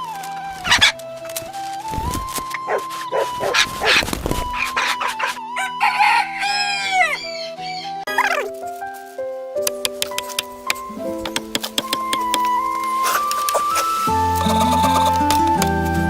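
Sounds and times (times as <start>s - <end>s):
background music: 0.0s - 16.0s
animal calling: 0.6s - 1.0s, 1.9s - 8.6s, 10.3s - 15.8s.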